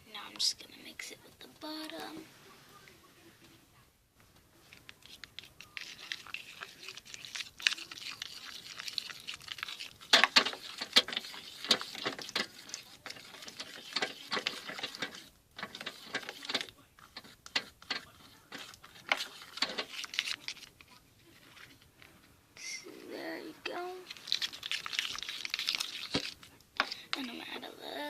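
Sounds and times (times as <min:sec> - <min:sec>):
slime being stirred: 0:04.6 - 0:22.0, 0:23.1 - 0:27.9.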